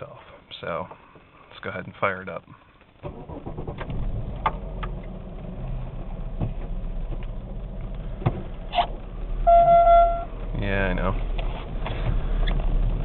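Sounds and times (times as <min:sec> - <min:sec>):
car engine starting and idling: 0:02.9 - 0:13.0.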